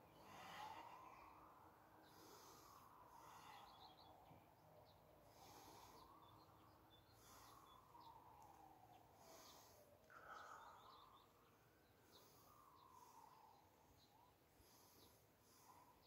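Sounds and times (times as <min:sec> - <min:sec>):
faint high chirps: 0:00.0 - 0:16.0.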